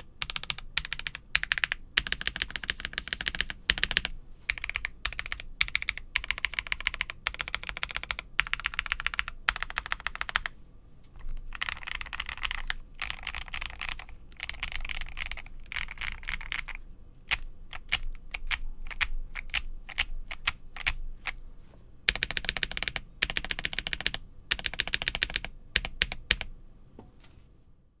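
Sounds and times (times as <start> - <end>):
mechanical keyboard typing: 0.0 - 10.5, 11.2 - 21.4, 22.1 - 26.5.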